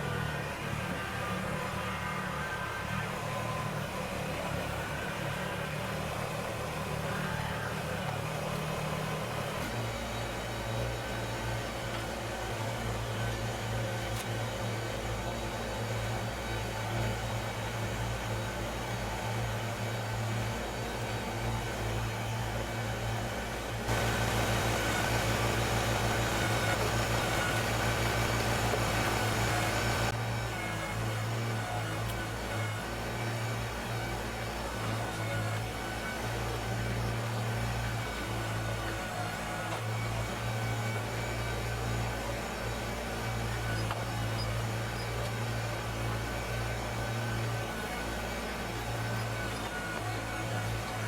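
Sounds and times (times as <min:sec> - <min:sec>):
tractor diesel engine running: 0:23.8 - 0:36.0.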